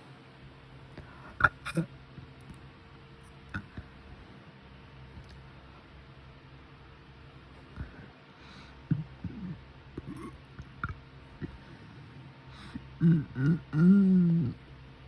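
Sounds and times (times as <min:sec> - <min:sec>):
closed-mouth humming: 0:00.0 - 0:15.0
mouth clicks: 0:03.5 - 0:03.9, 0:08.9 - 0:11.6.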